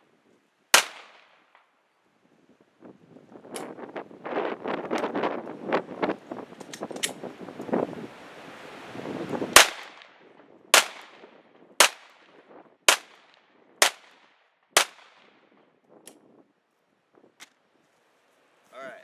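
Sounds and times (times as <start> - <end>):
pistol shots cracking with echo: 0.8 - 1.4, 9.6 - 10.1, 10.8 - 12.2, 12.9 - 15.4.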